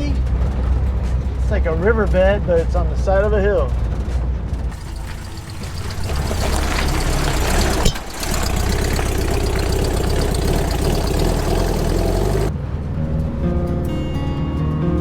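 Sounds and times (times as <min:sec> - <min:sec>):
rattle of vehicle body: 0:03.6 - 0:12.5
bus engine running: 0:03.8 - 0:12.5.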